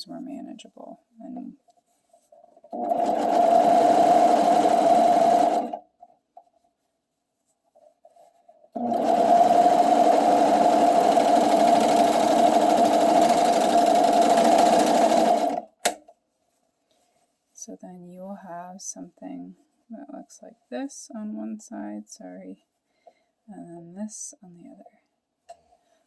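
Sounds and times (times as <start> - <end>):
sewing machine stitching: 2.6 - 5.8, 8.8 - 16.0.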